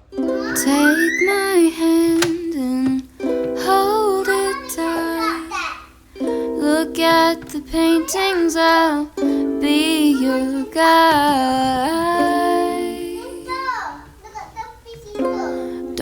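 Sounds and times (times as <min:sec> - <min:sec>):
plucked string instrument: 0:00.0 - 0:14.2, 0:15.0 - 0:16.0
person singing: 0:00.3 - 0:05.6, 0:06.2 - 0:13.7.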